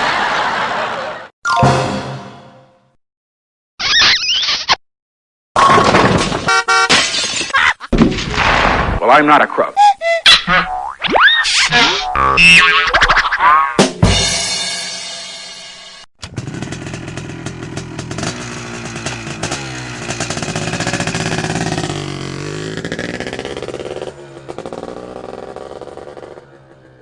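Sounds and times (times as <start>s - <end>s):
rattling engine revving: 16.2s - 27.0s.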